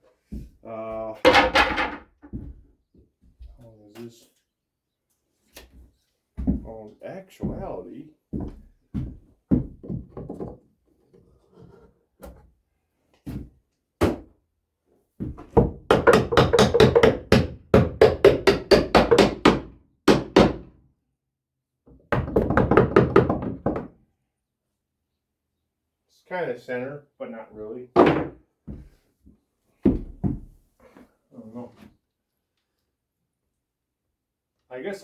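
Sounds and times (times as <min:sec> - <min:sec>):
knocking on wood: 0:01.3 - 0:02.6, 0:15.2 - 0:20.7, 0:22.1 - 0:23.9, 0:28.0 - 0:28.4.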